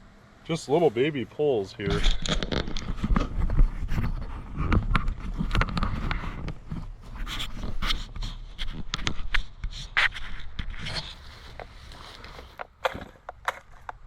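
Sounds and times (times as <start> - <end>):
chainsaw starter cord pulls: 12.2 - 14.0.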